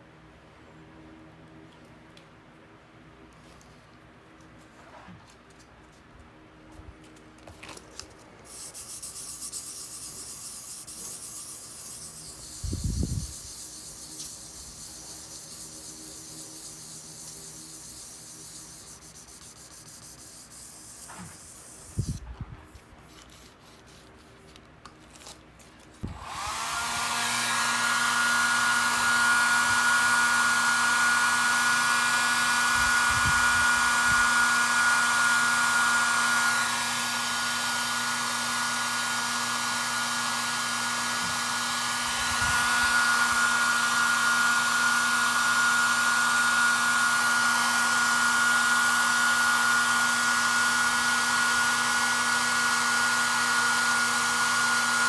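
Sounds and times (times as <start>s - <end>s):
hot-air blower whining: 11.6s - 18.2s, 26.0s - 55.0s.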